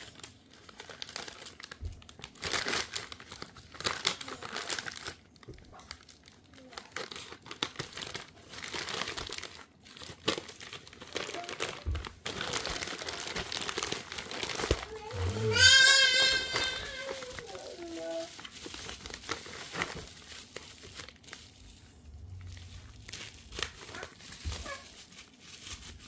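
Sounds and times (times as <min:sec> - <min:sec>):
packaging crinkling and rustling: 0:00.0 - 0:26.0.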